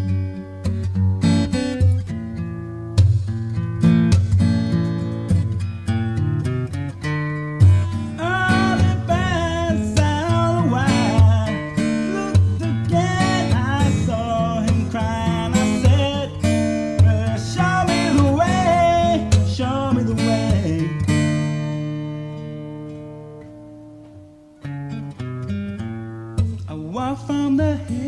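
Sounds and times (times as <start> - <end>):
acoustic guitar chords: 0.0 - 28.0
sliding lead guitar melody: 0.0 - 28.0.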